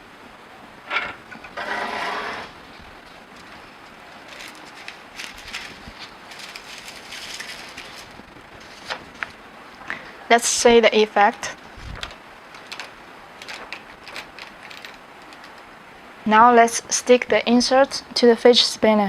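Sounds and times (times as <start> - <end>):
handling clicks and rustles: 11.8 - 15.7.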